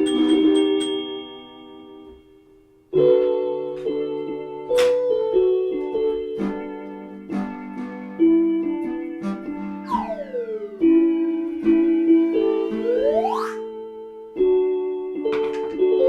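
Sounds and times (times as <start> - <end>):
keyboard playing chords: 0.0 - 16.0.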